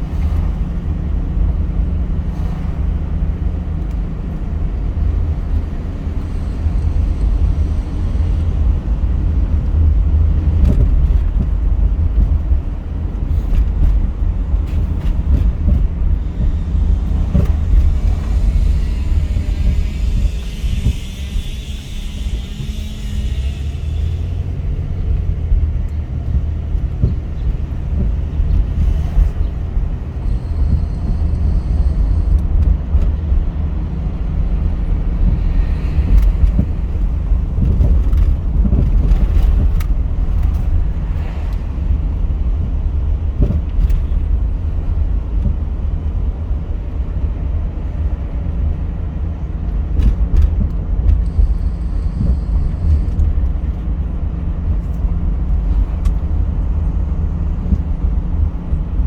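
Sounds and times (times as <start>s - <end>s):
car road and engine rumble: 0.0s - 59.0s.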